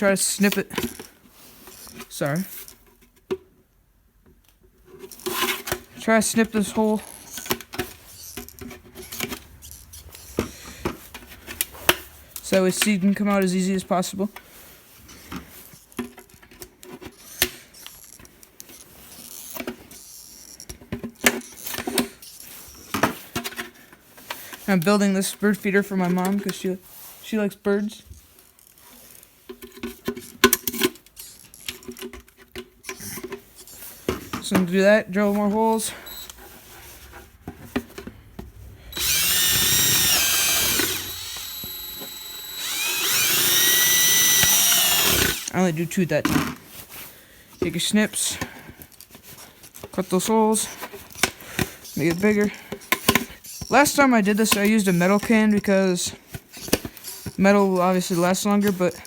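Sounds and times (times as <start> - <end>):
power drill whining: 35.9 - 36.5, 38.5 - 45.6.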